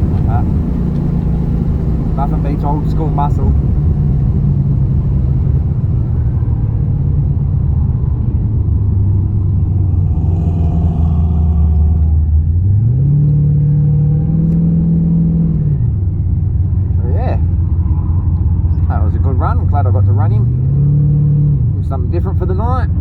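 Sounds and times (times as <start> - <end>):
car engine running: 0.0 - 23.0.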